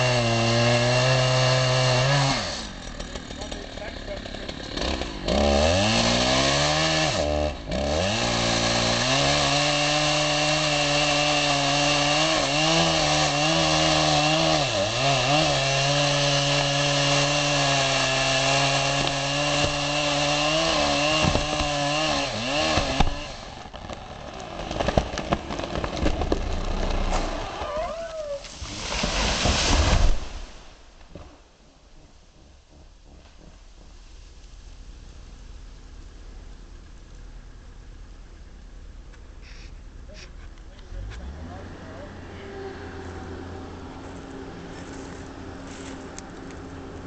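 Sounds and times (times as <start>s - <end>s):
chainsaw cutting at high revs: 0.0s - 27.4s
rustling: 23.0s - 37.2s, 44.0s - 46.6s.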